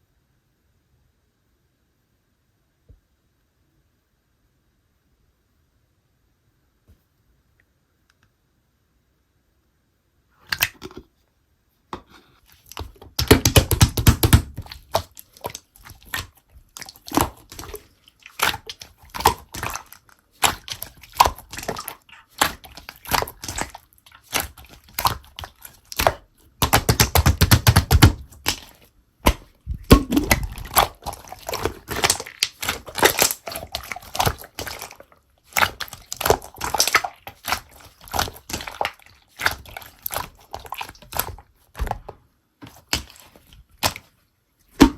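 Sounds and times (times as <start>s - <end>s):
slime squishing: 12.0s - 44.9s
sticky slime clicks and crackles: 18.4s - 42.0s.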